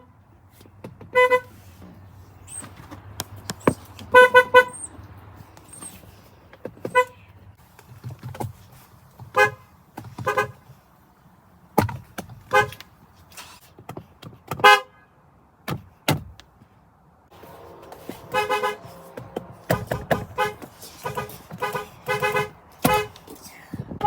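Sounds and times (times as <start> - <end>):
car horn short toots: 1.1 - 1.5, 4.1 - 5.0, 6.9 - 7.2, 9.3 - 10.6, 12.5 - 12.8, 17.6 - 23.2.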